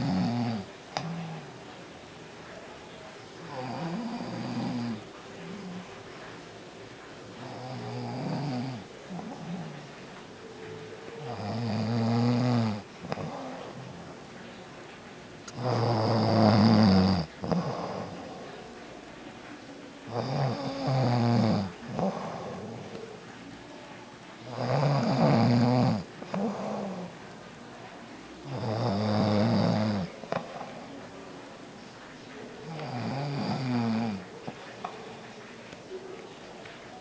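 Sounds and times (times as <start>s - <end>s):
man snoring: 15.6s - 18.2s, 24.5s - 27.1s.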